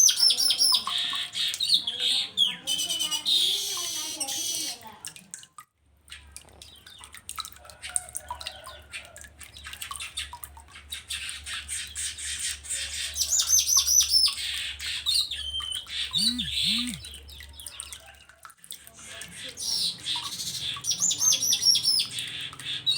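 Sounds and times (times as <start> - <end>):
bird chattering and singing: 16.2 - 17.0
low hooting notes: 16.2 - 17.0.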